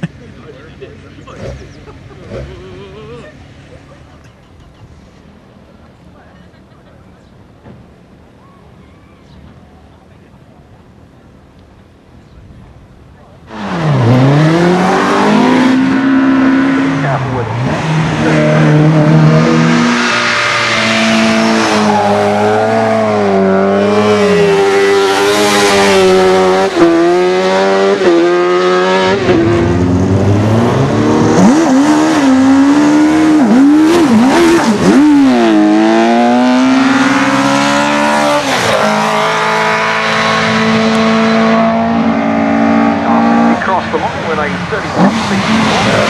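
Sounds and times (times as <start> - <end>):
race car engine revving: 1.0 - 3.3, 13.4 - 46.0.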